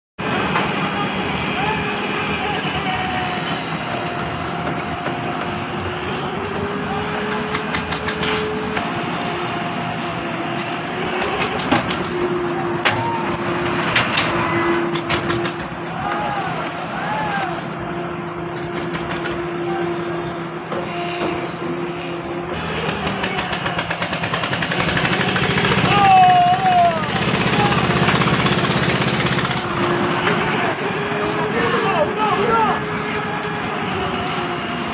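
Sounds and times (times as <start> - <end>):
machine pulsing on concrete: 22.5 - 34.7.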